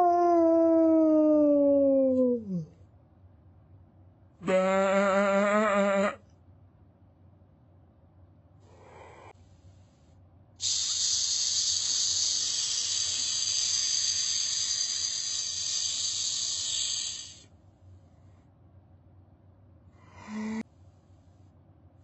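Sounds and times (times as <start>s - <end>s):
child hissing like a snake: 8.7s - 9.3s, 10.6s - 17.4s.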